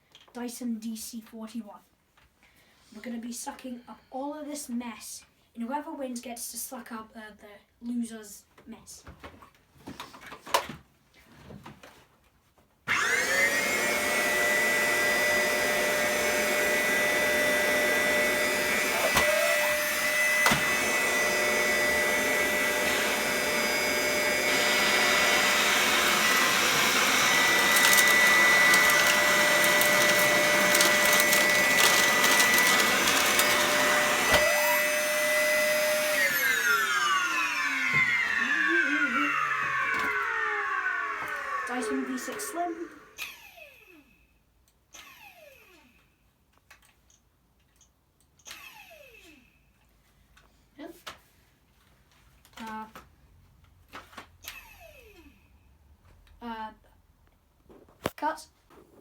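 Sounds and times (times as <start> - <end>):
vacuum cleaner switch: 12.9 - 43.6
vacuum cleaner whining: 12.9 - 44.1.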